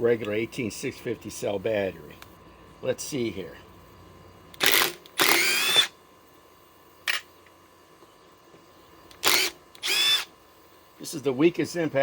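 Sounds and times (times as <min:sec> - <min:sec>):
impact driver bursts: 0:04.6 - 0:05.9, 0:09.2 - 0:10.3.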